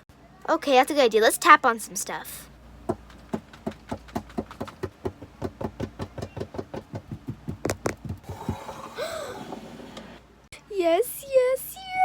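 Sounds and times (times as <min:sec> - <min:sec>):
rapid tapping on a toy: 0:02.9 - 0:08.6.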